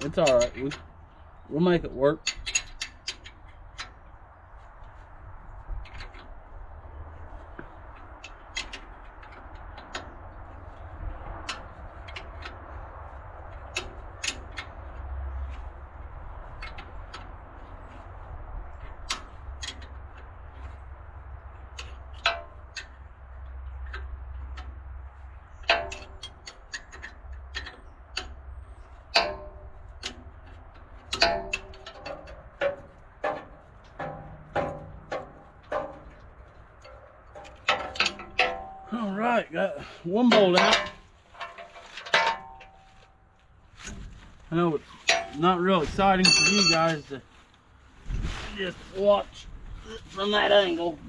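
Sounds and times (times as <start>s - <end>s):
hand tools clinking on metal: 0.0s - 0.9s, 31.1s - 43.0s, 44.5s - 47.2s.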